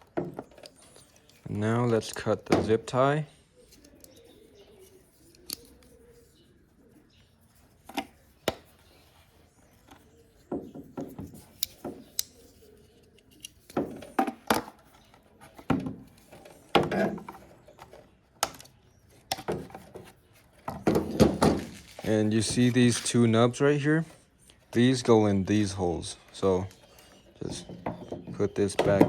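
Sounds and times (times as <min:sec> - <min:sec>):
plastic rattling and knocking: 0:00.0 - 0:03.0, 0:09.8 - 0:12.1, 0:13.7 - 0:18.7, 0:19.3 - 0:23.1, 0:26.4 - 0:29.0.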